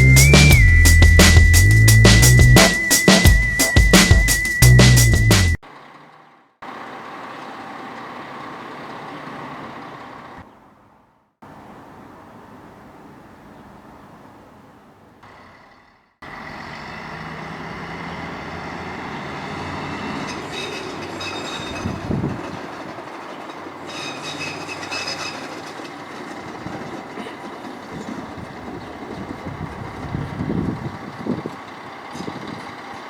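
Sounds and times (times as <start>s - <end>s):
high squeals: 0.0s - 5.6s, 16.3s - 30.0s
train engine hum: 0.0s - 10.4s, 15.3s - 33.0s
rail and wheel clatter: 16.3s - 33.0s.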